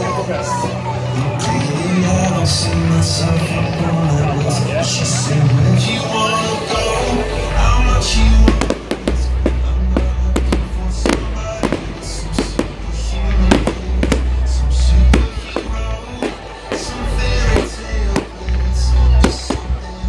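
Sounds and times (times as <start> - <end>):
loud pop music with bass: 0.0 - 20.0
fireworks banging and crackling: 8.2 - 20.0.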